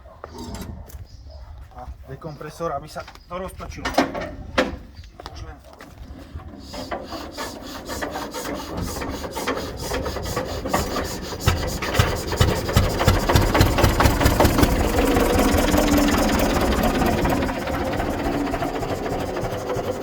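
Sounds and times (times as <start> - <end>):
diesel engine cranking and starting: 6.2 - 20.0.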